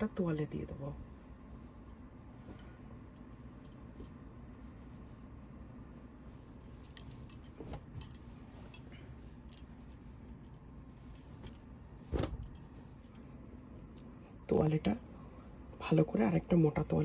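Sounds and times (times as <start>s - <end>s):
small clinking noises: 1.4s - 5.4s, 6.6s - 11.8s, 12.4s - 13.4s
towels rustling: 6.1s - 13.2s.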